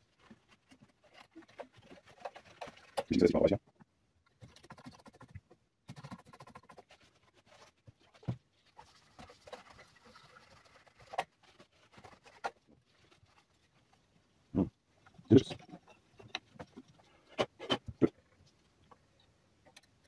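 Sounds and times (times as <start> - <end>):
faint rustling: 0.0 - 3.6, 6.4 - 19.4.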